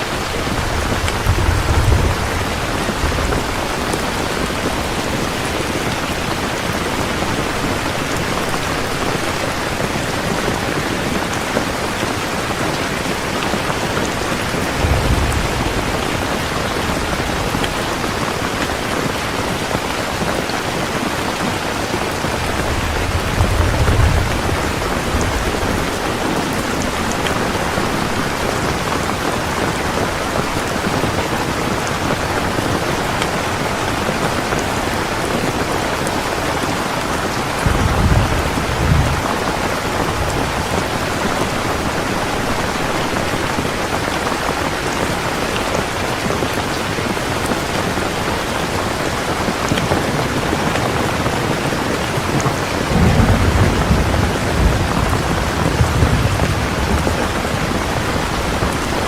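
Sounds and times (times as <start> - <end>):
thunder rumbling: 0.0 - 48.5, 49.8 - 59.0
steady rain falling: 0.0 - 59.0.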